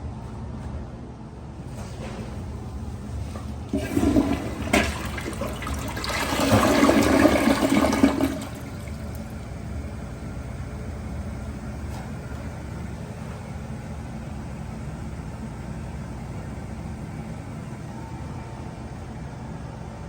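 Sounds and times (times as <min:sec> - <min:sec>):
toilet flushing: 0:02.0 - 0:18.0.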